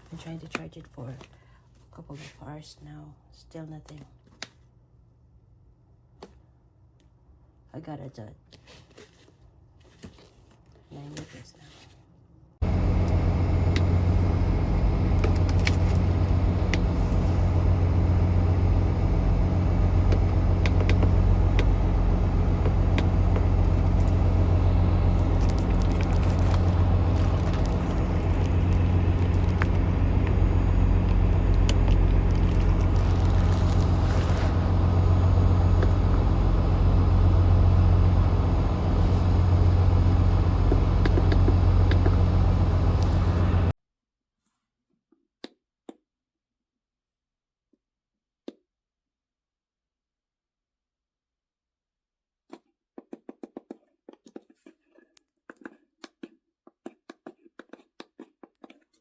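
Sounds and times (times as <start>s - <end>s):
car engine idling: 12.6s - 43.7s.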